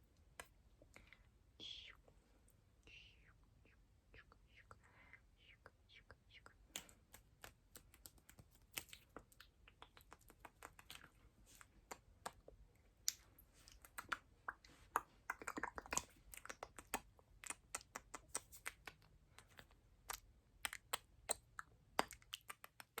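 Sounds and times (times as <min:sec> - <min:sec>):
wet mouth clicks and smacks: 0:05.6 - 0:23.0.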